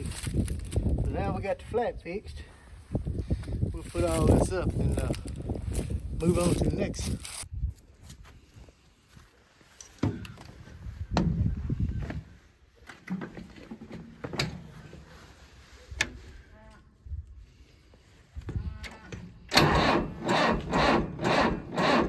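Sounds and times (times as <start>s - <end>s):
rustling and shuffling: 0.0s - 1.8s, 2.8s - 16.5s.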